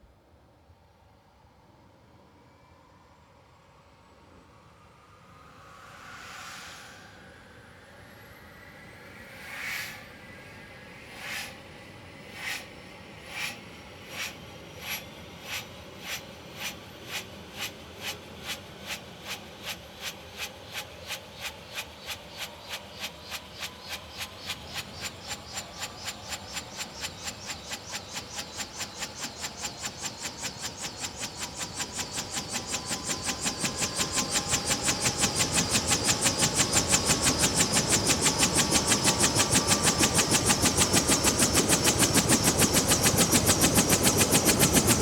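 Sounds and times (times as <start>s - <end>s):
turbine whine rising: 5.2s - 18.2s, 22.7s - 45.0s
helicopter rotor swishing: 12.2s - 45.0s.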